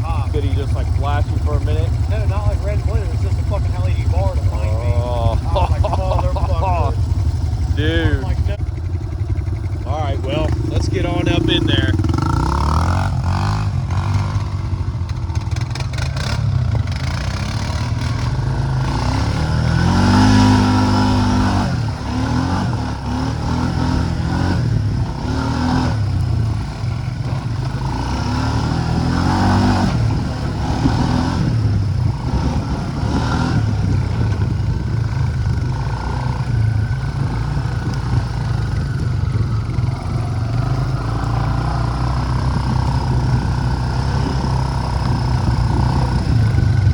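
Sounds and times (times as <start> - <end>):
atv engine revving: 0.0 - 46.9.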